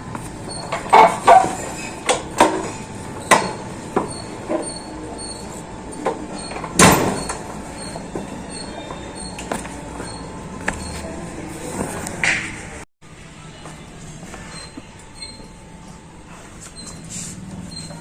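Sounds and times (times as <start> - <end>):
sharp knocks and clanks: 0.7 - 4.7, 6.0 - 7.5.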